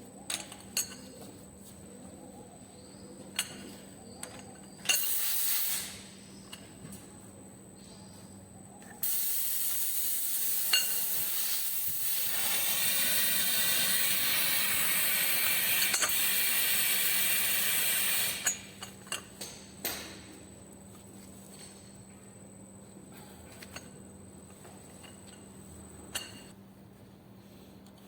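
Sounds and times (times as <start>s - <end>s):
hissing jet of air: 5.1s - 6.0s, 9.0s - 18.5s.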